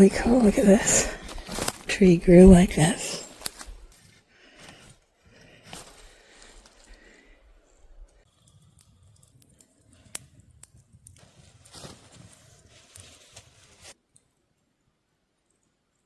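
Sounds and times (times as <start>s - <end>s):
footsteps on forest floor: 0.0s - 4.9s
twigs snapping: 1.2s - 1.9s, 3.2s - 4.0s, 5.7s - 7.2s.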